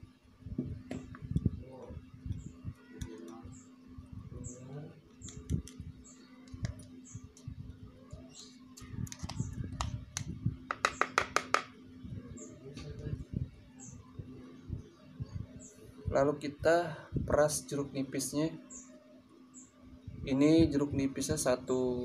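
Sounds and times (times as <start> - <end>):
small bird chirping: 1.6 - 10.0, 18.6 - 19.8.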